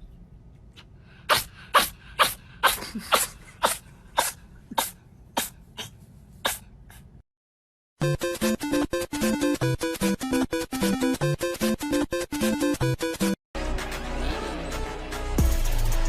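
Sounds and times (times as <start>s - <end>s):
pet sneezing: 1.3s - 7.2s.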